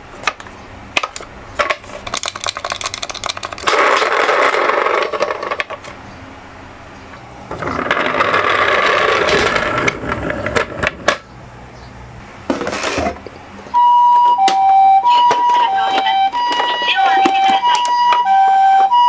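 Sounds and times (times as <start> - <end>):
toy cars rolling down a slope: 1.0 - 6.0, 7.5 - 11.2.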